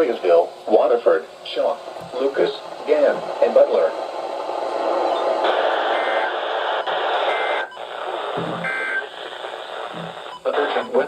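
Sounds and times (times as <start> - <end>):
radio hiss: 0.0 - 11.0
digital data bursts: 4.8 - 11.0.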